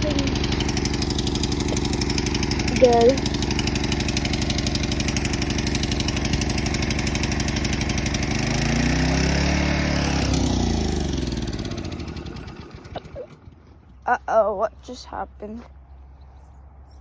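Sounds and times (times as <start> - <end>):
lawnmower engine running: 0.0 - 15.6.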